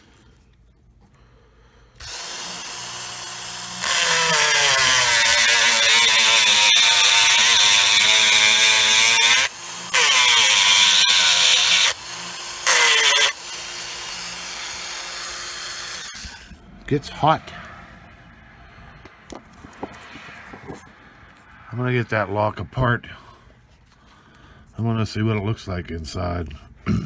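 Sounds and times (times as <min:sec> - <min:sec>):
rotary tool grinding metal: 0:02.0 - 0:16.6.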